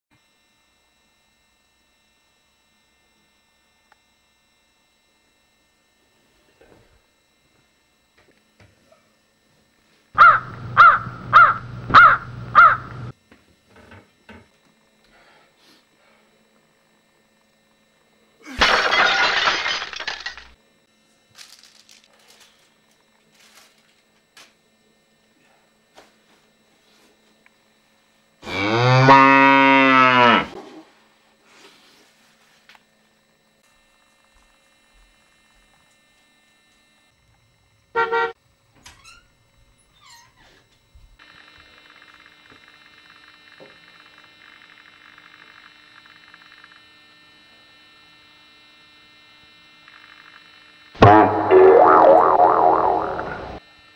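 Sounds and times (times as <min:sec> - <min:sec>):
bird harsh cawing: 0:10.2 - 0:13.0
low hum: 0:10.2 - 0:13.1, 0:51.0 - 0:53.6
cow mooing: 0:28.4 - 0:30.6.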